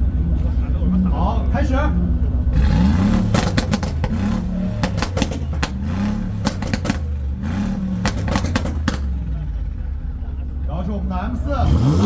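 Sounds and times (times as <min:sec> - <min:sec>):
engine revving hard: 0:02.5 - 0:09.6, 0:11.5 - 0:12.0
exhaust cracks and pops: 0:03.0 - 0:10.2.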